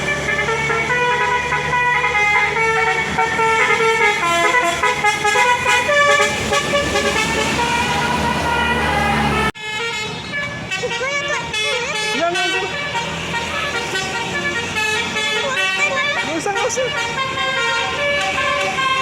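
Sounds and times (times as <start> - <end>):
low engine hum: 0.0 - 9.6
multi-tone bus horn melody: 0.0 - 19.0.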